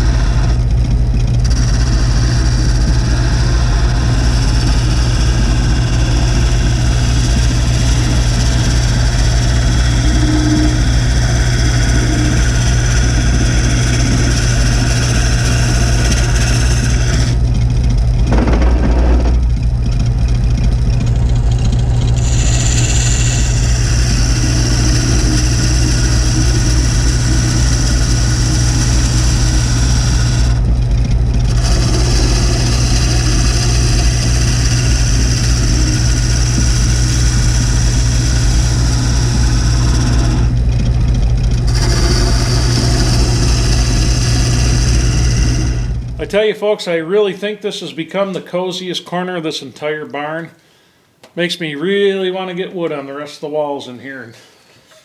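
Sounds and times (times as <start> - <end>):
lathe motor humming: 0.0 - 46.3.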